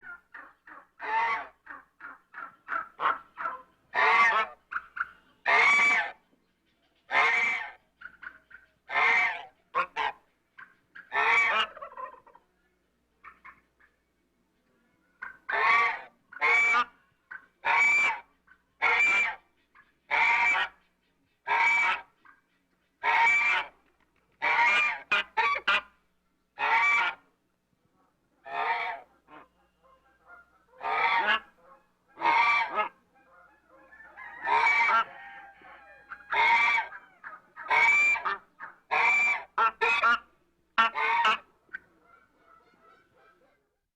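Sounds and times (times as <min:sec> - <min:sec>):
goose honking: 0:00.1 - 0:06.2, 0:07.1 - 0:10.2, 0:11.0 - 0:12.3, 0:15.2 - 0:17.0, 0:17.6 - 0:19.4, 0:20.1 - 0:20.9, 0:21.5 - 0:22.1, 0:23.0 - 0:23.8, 0:24.4 - 0:26.0, 0:26.6 - 0:27.3, 0:28.4 - 0:43.6.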